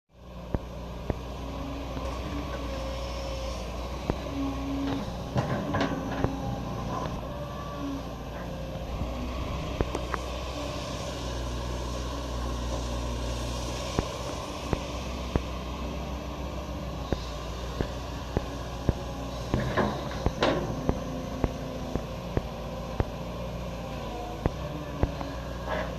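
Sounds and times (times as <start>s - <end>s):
excavator diesel engine: 0.1s - 25.9s
knocks and clunks: 4.9s - 6.4s, 17.8s - 22.5s.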